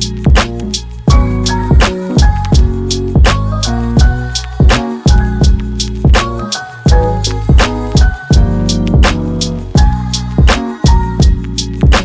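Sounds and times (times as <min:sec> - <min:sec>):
hip-hop music with drum beat: 0:00.0 - 0:12.0.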